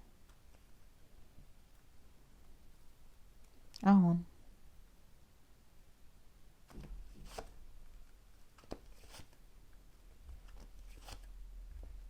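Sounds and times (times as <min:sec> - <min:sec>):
cards tapping and rustling: 0:08.6 - 0:09.4.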